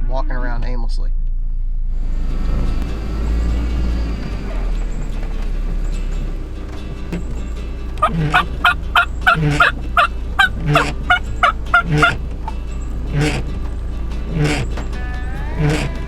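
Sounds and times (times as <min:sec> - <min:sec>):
low hum: 0:00.0 - 0:16.0
rush of noise: 0:01.6 - 0:09.2
wild turkey yelping: 0:08.0 - 0:12.2.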